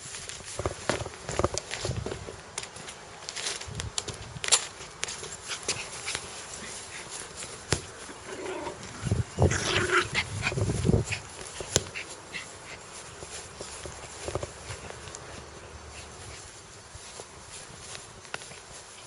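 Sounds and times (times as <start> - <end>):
dog growling: 8.2 - 10.3.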